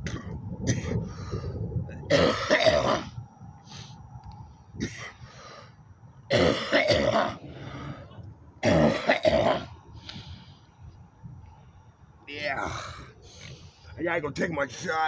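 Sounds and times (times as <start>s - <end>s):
man clearing throat: 2.1s - 3.1s, 6.3s - 7.4s, 8.6s - 9.7s
man coughing: 2.1s - 3.1s, 6.3s - 7.4s, 8.6s - 9.7s.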